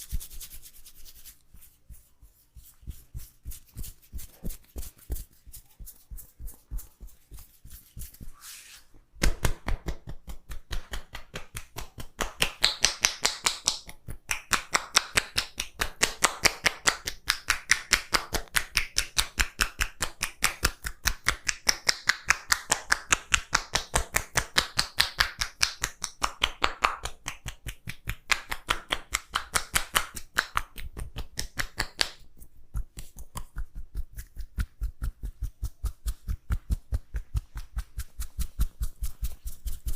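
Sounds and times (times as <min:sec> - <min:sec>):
hands tapping and slapping head: 0:09.2 - 0:39.9.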